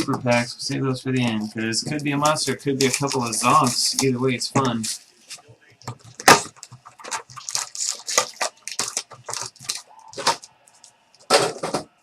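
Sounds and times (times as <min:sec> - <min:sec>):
card pack wrapper crinkling: 0:02.0 - 0:04.2, 0:05.8 - 0:11.2.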